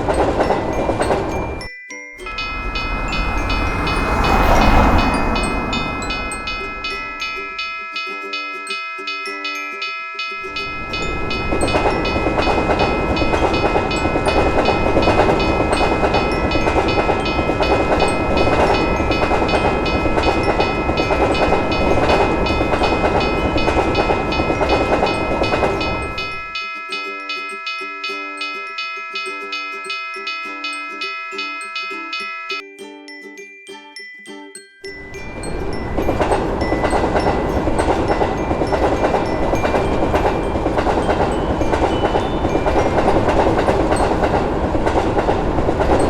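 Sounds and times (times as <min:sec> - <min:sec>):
train rumbling: 0:00.0 - 0:07.8, 0:10.5 - 0:26.6, 0:35.0 - 0:46.0
railroad crossing bell ringing: 0:00.0 - 0:46.0.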